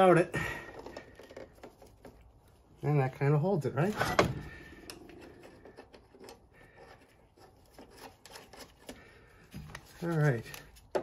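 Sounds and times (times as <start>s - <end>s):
pulley and belt clicking and rubbing: 0.6s - 2.6s, 4.7s - 11.0s.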